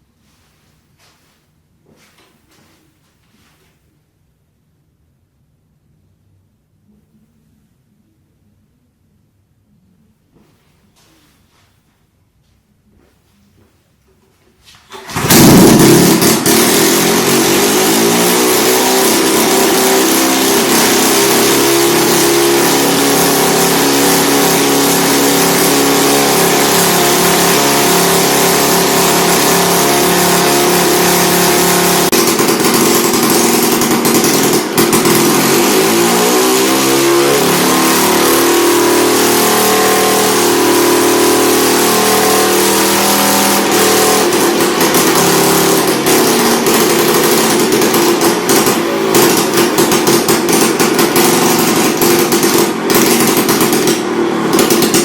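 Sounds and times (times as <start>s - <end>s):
lawn mower engine running: 14.9s - 55.0s.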